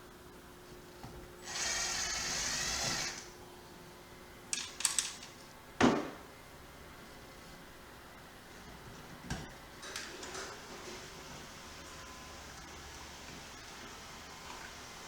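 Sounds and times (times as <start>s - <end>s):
cordless drill running: 1.4s - 3.3s.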